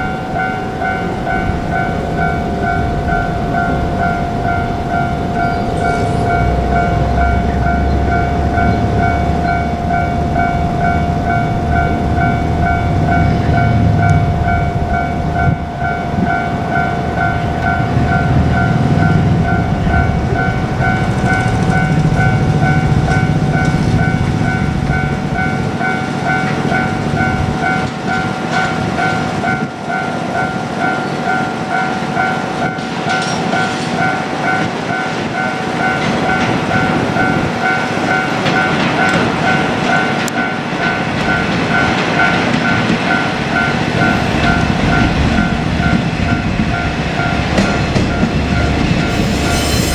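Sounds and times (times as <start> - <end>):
diesel train rumble: 0.0 - 49.9
level-crossing alarm ding: 0.0 - 49.9
train wheel clicks: 17.1 - 29.8, 32.6 - 49.9.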